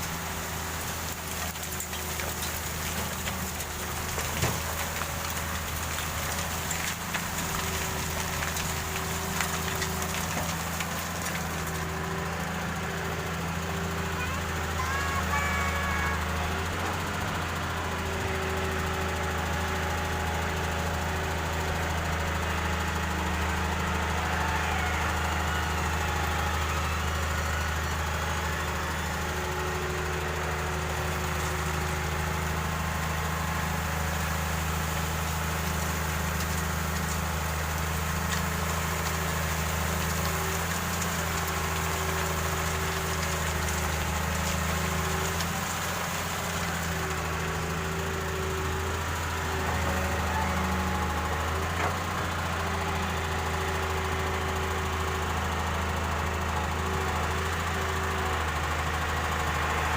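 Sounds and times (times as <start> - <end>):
excavator engine running: 0.0 - 59.9.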